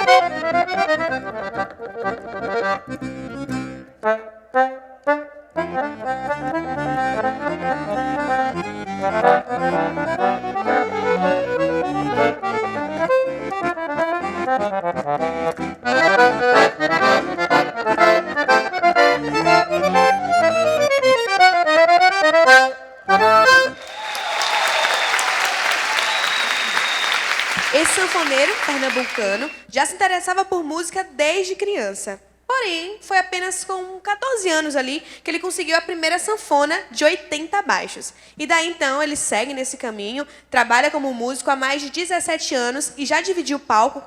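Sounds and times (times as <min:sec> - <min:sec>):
accordion playing: 0:00.0 - 0:29.6
applause: 0:23.7 - 0:29.6.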